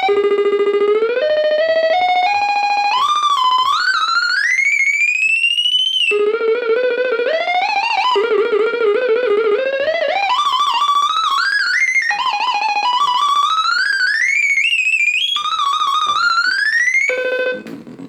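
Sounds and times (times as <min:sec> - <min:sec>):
synthesizer lead tone with vibrato: 0:06.1 - 0:18.0.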